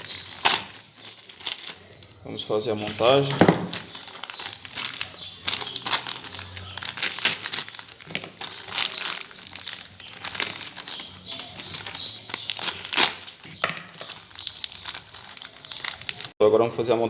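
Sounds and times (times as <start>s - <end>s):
crinkling and rustling: 0.0s - 16.4s.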